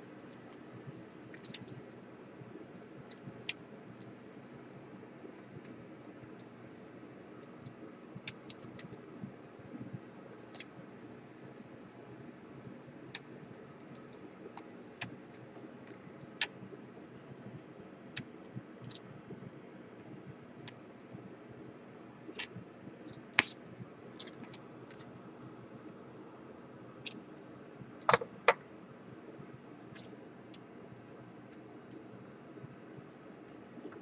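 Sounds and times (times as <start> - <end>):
faint background hum: 0.0 - 34.0
clicks of laptop parts handled: 28.1 - 28.6.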